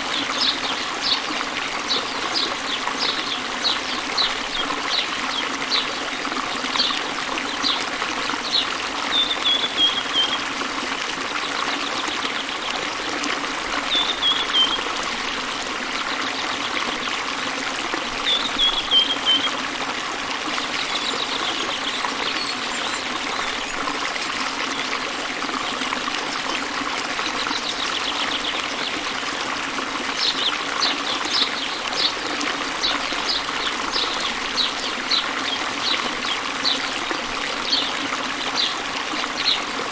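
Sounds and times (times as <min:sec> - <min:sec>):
waterfall running: 0:00.0 - 0:39.9
small birds chirping: 0:06.7 - 0:10.4, 0:13.8 - 0:14.9, 0:20.8 - 0:23.8, 0:27.3 - 0:29.4, 0:30.1 - 0:39.9.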